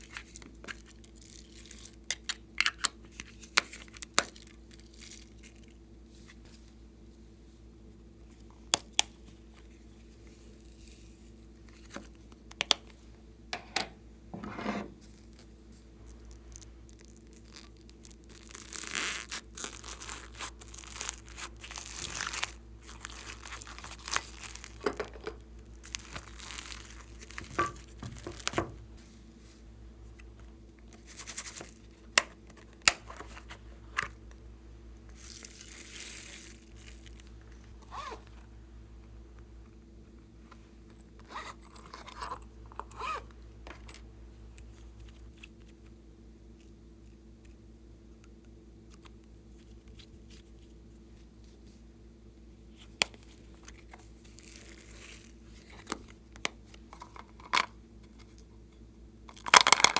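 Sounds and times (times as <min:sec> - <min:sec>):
plastic crinkling and tearing: 0:00.0 - 0:05.8, 0:15.0 - 0:28.7, 0:31.0 - 0:34.2, 0:35.1 - 0:38.3, 0:52.8 - 0:57.4.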